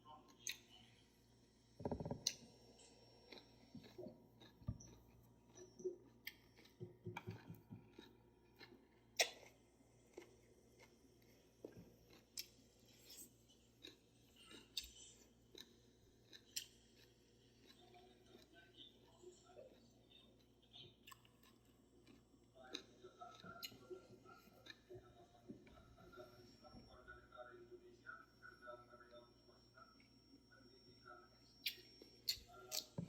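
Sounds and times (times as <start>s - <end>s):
open-mouthed chewing: 2.2s - 26.4s, 31.6s - 33.0s.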